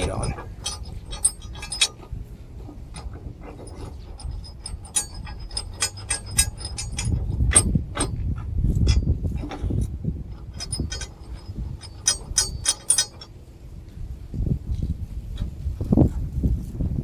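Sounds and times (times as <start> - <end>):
metal tools clinking on blade: 0.0 - 2.1, 2.9 - 9.8, 10.4 - 13.3.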